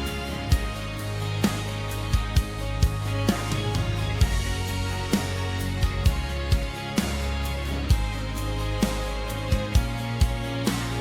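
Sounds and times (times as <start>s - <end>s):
bass line: 0.0s - 11.0s
drum beat: 2.2s - 7.2s.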